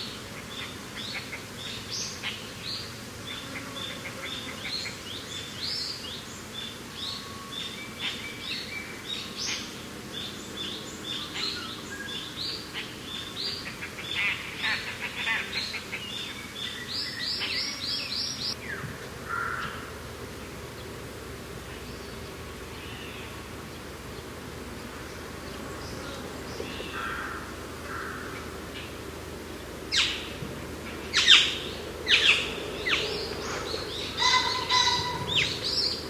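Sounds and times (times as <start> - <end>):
birds chirping: 0.0 - 21.0, 21.6 - 36.0
wind hiss: 18.2 - 36.0.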